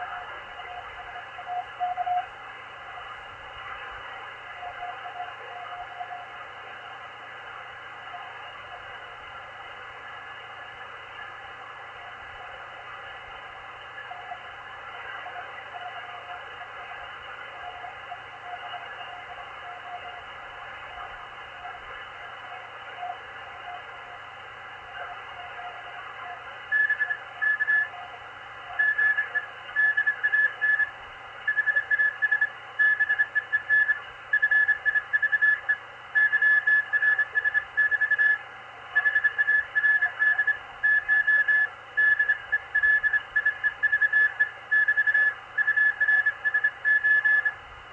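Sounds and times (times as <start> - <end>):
radio band hiss: 0.0 - 47.9
morse code tone: 26.7 - 28.0, 28.7 - 30.9, 31.5 - 38.4, 39.0 - 47.6.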